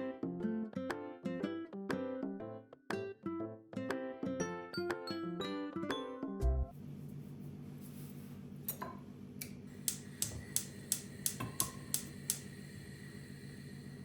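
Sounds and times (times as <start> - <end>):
steady low hum: 6.5 - 14.0.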